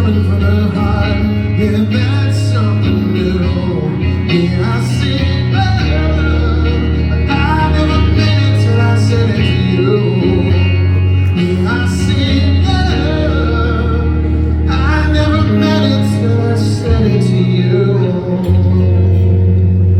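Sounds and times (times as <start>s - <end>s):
wordless singing: 0.0s - 19.4s
live rock band playing ballad: 0.0s - 19.9s.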